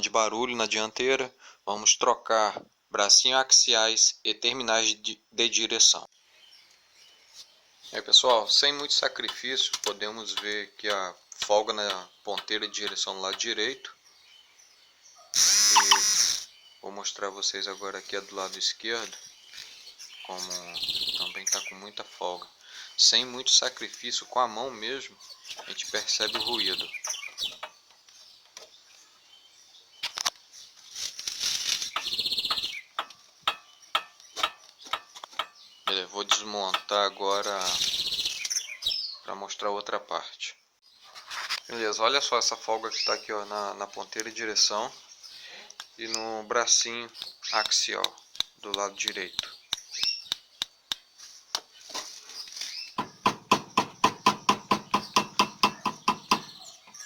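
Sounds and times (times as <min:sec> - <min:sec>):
worn steering joint knocking: 0:53.0 - 0:57.0.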